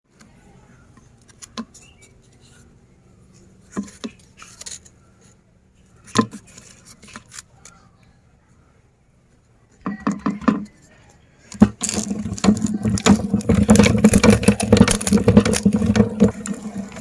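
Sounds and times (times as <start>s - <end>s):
hard cookies clicking and cracking: 9.8s - 17.0s.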